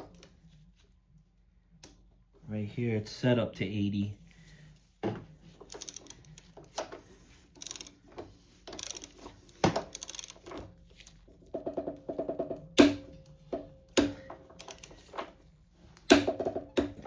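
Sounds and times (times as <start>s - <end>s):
torque wrench ratchet clicks: 5.7s - 6.4s, 7.6s - 7.9s, 8.8s - 9.2s, 9.9s - 10.4s.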